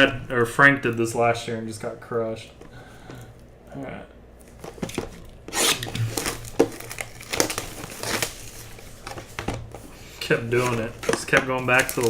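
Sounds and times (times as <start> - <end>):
packaging torn and crinkled: 5.5 - 9.2, 10.3 - 12.0.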